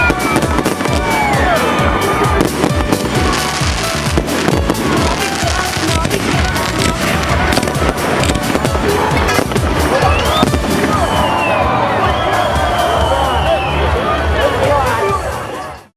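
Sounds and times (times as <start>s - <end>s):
fireworks crackling: 0.0s - 13.3s
falling firework whistle: 9.9s - 13.9s.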